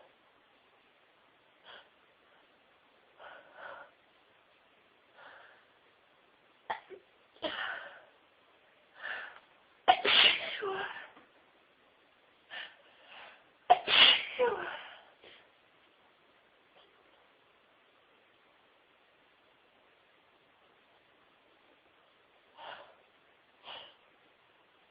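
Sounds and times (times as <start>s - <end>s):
woman sneezing: 9.9s - 11.1s, 13.7s - 14.9s.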